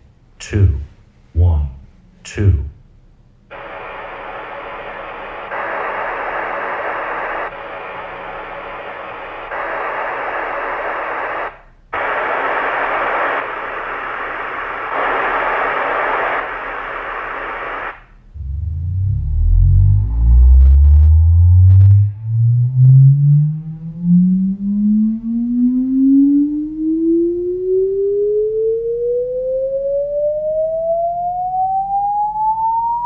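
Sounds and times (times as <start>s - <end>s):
hiss test noise through loudspeaker: 0.4s - 2.8s.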